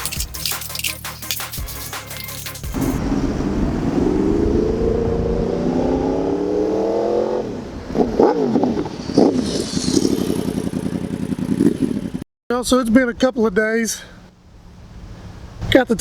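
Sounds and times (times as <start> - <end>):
motorcycle engine revving: 2.7 - 12.2.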